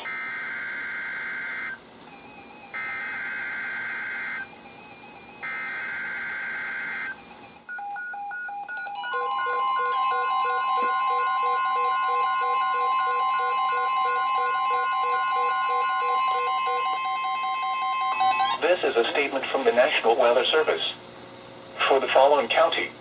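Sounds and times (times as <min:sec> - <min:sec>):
steady warning alarm tone: 0:00.0 - 0:21.0.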